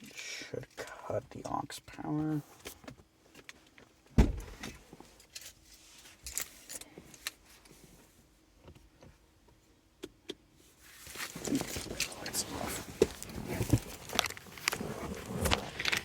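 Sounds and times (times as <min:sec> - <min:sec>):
faint steady hum: 0:00.0 - 0:16.0
heavy thump: 0:04.2 - 0:04.6.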